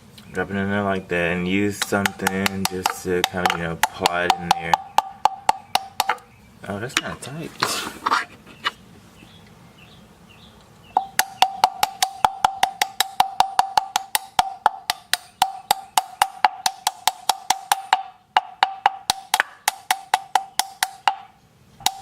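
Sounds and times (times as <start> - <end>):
sharp metallic taps with ringing: 1.8 - 6.3, 11.0 - 22.0.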